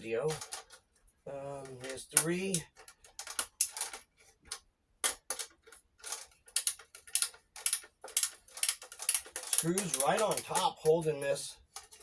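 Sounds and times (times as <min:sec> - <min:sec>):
hand ratchet clicking: 0:06.0 - 0:11.0.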